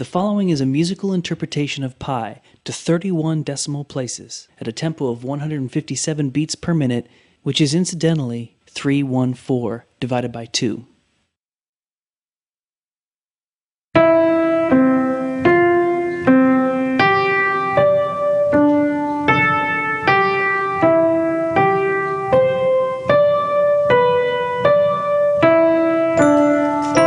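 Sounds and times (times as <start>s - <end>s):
slow piano melody: 14.0s - 27.0s.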